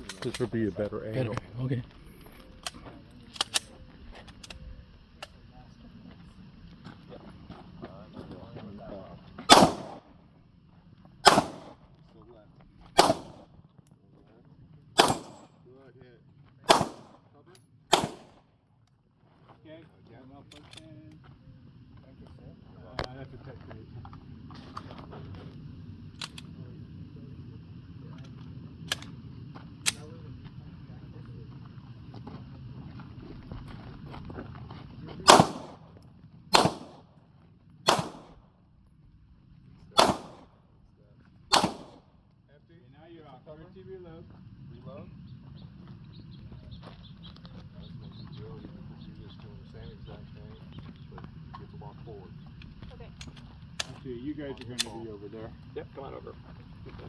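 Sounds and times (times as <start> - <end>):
handgun shots with echo: 9.5 - 10.0, 11.2 - 11.8, 13.0 - 13.4, 15.0 - 15.5, 16.7 - 17.2, 17.9 - 18.4, 35.3 - 35.8, 36.5 - 37.0, 37.9 - 38.4, 40.0 - 40.5, 41.5 - 42.0.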